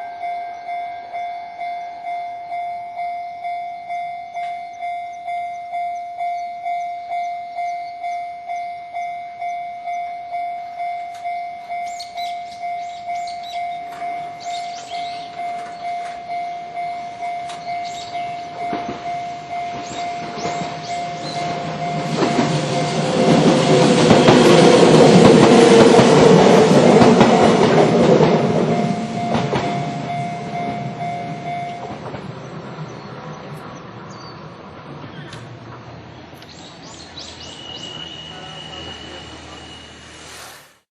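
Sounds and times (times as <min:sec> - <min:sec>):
level-crossing bell ringing: 0:00.0 - 0:32.0
train rumble and wheel noise: 0:00.0 - 0:40.8.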